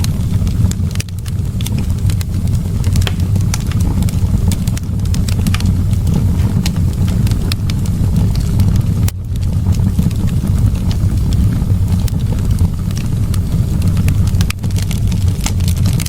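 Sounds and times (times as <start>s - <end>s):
fire crackles and pops: 0.0s - 16.0s
fire roaring: 0.0s - 16.0s.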